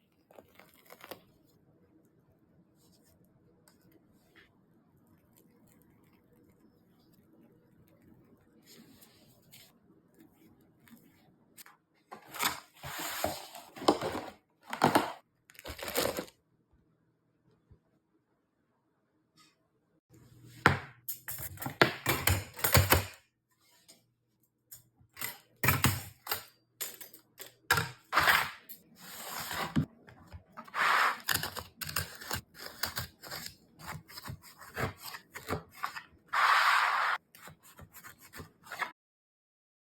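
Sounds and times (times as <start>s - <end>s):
packaging rubbing and rustling: 12.2s - 16.4s
packaging crumpling: 15.5s - 16.4s.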